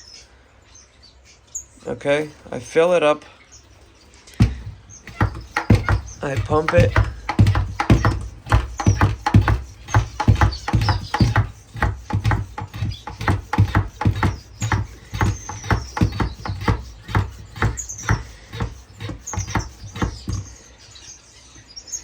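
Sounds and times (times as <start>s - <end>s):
finches chirping: 0.0s - 22.0s
hand pump strokes thumping: 4.3s - 20.7s.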